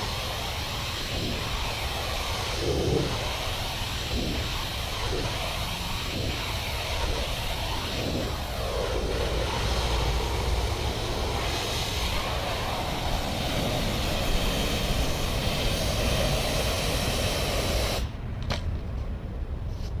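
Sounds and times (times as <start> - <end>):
high-pressure water spray hiss: 0.0 - 18.1
pressure washer engine rumbling: 0.0 - 18.2.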